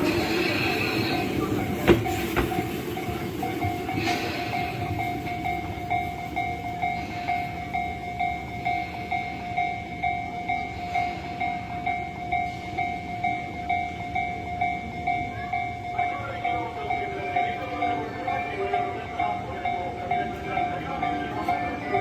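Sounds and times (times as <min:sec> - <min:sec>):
level-crossing alarm dinging: 0:00.0 - 0:22.0
passing train rumble: 0:00.0 - 0:22.0.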